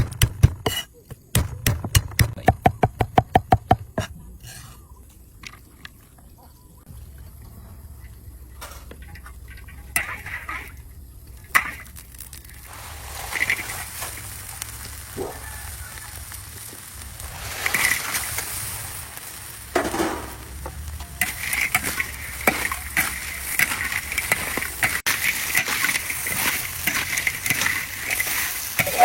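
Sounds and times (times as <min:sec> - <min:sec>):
utensil scraping a pan: 0:00.0 - 0:01.2, 0:21.2 - 0:29.0
food sizzling in a pan: 0:11.4 - 0:29.0.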